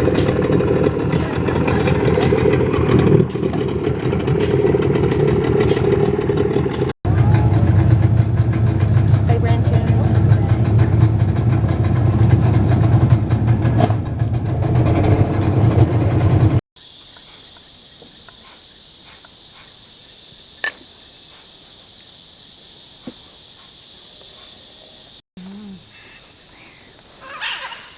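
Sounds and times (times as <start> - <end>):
engine rumbling: 0.0 - 16.6
insect chorus: 16.8 - 27.9.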